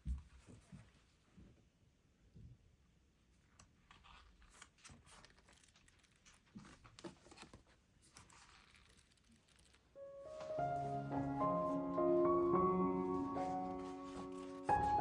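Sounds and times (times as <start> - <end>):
faint rustling: 4.0 - 15.0.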